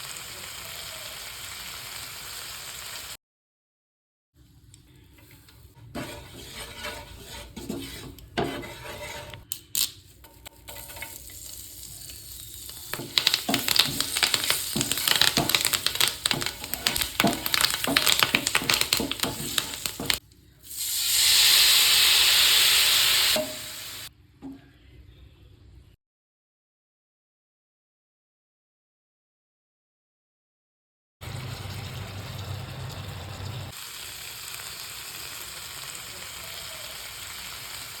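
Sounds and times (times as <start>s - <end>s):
loud steady sizzle: 0.0s - 3.2s, 10.6s - 24.1s, 31.2s - 38.0s
fish crackling in hot oil: 10.8s - 22.0s.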